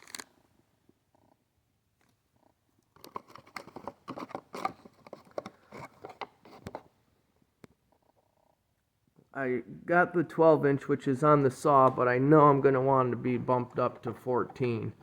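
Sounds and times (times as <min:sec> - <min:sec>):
packaging rustling and clicking: 0:02.9 - 0:06.9.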